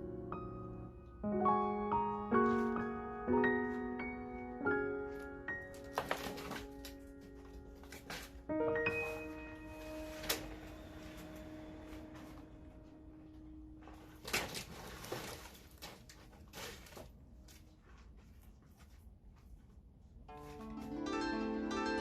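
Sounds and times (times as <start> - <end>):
background music held note: 0.0 - 14.3, 20.3 - 22.0.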